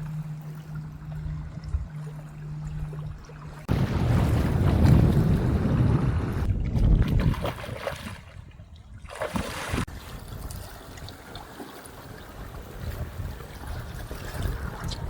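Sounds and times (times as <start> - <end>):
water sounds: 0.0 - 15.0
wind on microphone: 2.7 - 11.3, 12.1 - 15.0.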